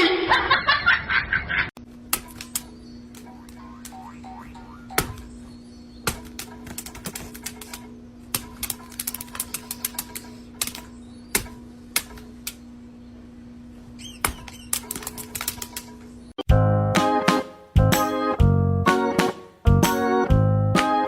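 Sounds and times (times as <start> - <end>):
steady hum: 1.8 - 16.4
music: 16.5 - 21.0.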